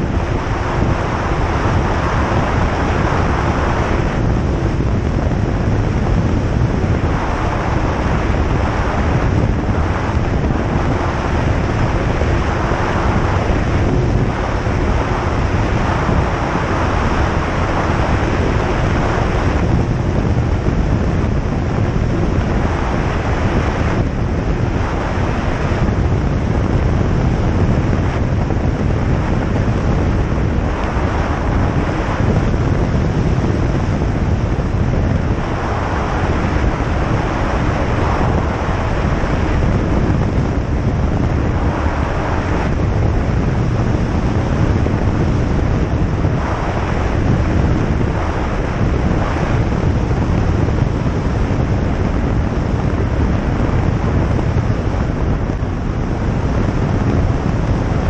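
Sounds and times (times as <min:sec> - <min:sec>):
faint steady hum: 0:00.0 - 0:58.0
light aircraft engine and propeller: 0:00.0 - 0:58.0
rush of air and wind: 0:00.0 - 0:58.0.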